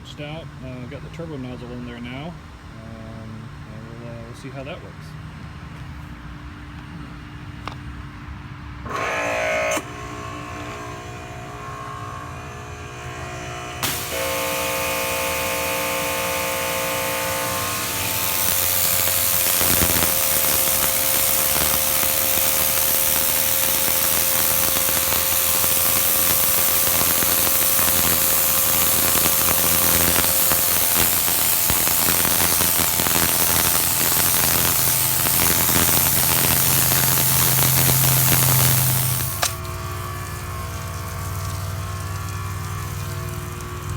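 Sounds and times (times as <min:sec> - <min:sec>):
pressure washer motor whine: 0:08.8 - 0:43.9
water jet hissing on concrete: 0:13.8 - 0:43.9.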